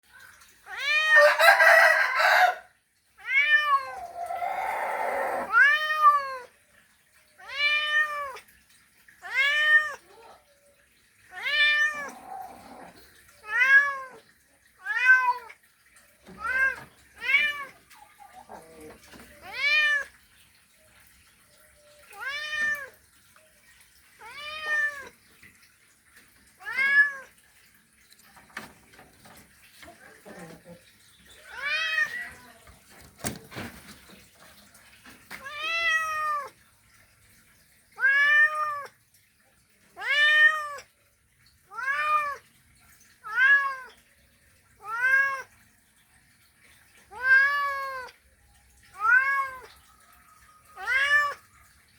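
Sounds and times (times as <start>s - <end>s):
rough cat cries: 0.6s - 1.2s, 3.2s - 6.5s, 9.2s - 10.4s, 11.3s - 14.2s, 14.8s - 15.6s, 38.0s - 38.9s, 41.7s - 42.4s, 43.2s - 44.0s, 44.8s - 45.5s, 47.1s - 48.1s, 48.9s - 49.8s, 50.8s - 51.4s
cat meowing: 3.2s - 6.5s, 7.4s - 8.4s, 11.3s - 12.8s, 22.2s - 23.0s, 24.2s - 25.1s, 38.0s - 38.9s, 43.2s - 44.0s, 47.1s - 48.1s, 49.0s - 49.8s, 50.8s - 51.4s.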